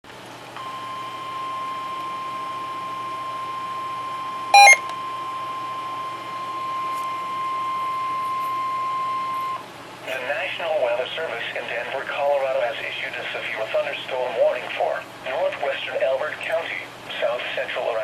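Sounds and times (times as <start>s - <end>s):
loud brief electronic beep: 4.6s - 4.8s
single-pitched alarm tone: 4.6s - 4.8s.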